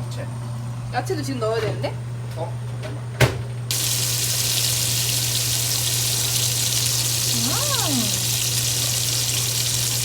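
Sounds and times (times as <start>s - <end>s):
vegetables sizzling in a pan: 3.7s - 10.0s.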